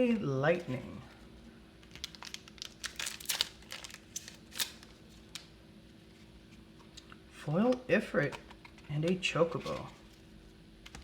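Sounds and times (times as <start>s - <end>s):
foil wrapper tearing and crinkling: 1.8s - 5.4s.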